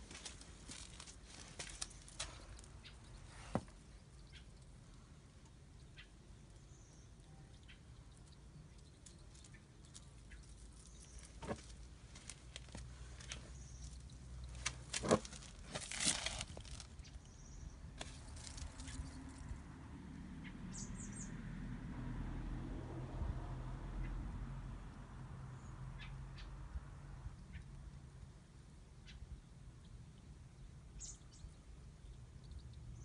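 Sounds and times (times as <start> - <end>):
clicks and crackles: 8.2 - 17.3.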